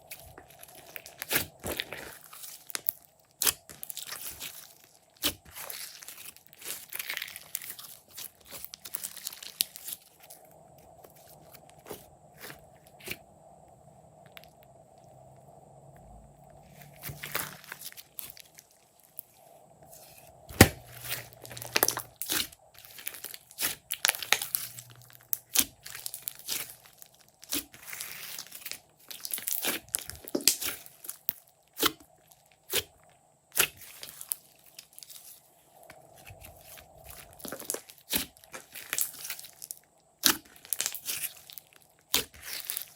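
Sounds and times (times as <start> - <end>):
slime squishing and popping: 20.5 - 32.0, 36.3 - 42.9.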